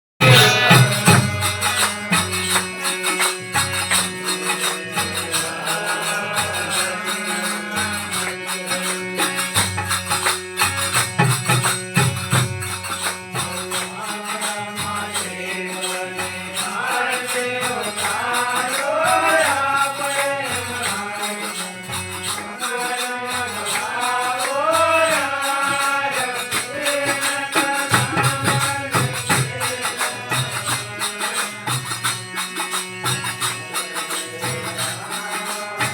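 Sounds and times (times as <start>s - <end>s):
person singing: 0.2s - 9.6s
jingling percussion: 0.2s - 35.9s.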